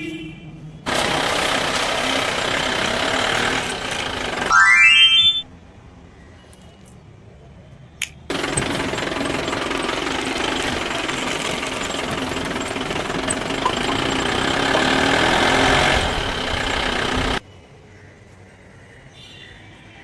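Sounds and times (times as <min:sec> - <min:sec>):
toy vehicle motor rattling: 0:00.9 - 0:04.5, 0:08.3 - 0:17.4.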